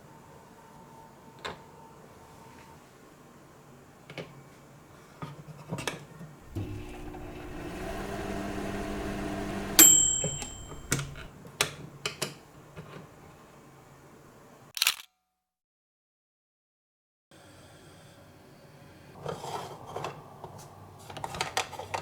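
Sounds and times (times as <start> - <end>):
steady electric hum: 6.4 - 11.3
bright ding: 9.8 - 11.3.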